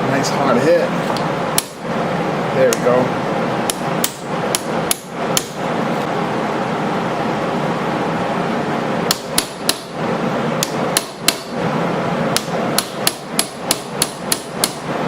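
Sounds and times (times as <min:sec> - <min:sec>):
hammer tapping on metal: 0:01.6 - 0:01.8, 0:03.7 - 0:05.6, 0:09.1 - 0:09.9, 0:10.6 - 0:11.6, 0:12.3 - 0:14.9.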